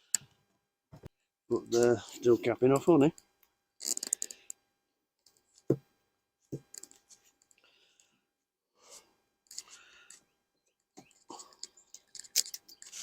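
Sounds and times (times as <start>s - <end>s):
light scraping and rustling: 11.0s - 13.0s.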